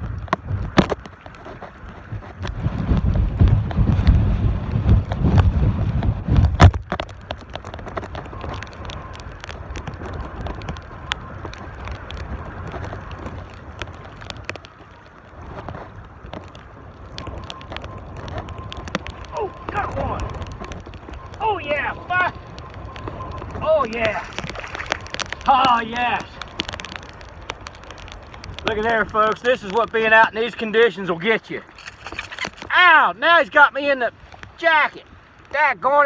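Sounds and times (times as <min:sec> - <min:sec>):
wind buffeting microphone: 0:00.0 - 0:30.6
sharp ticks: 0:31.8 - 0:32.7.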